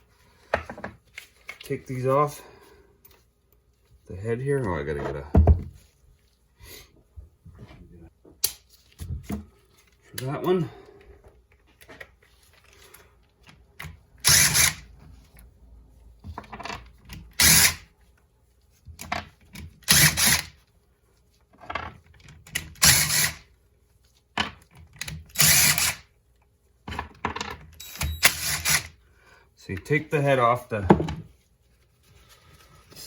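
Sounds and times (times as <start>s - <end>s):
cordless power tool spinning nuts: 14.2s - 14.9s, 17.4s - 17.8s, 19.8s - 20.6s, 22.7s - 23.4s, 25.3s - 26.1s, 27.8s - 29.0s.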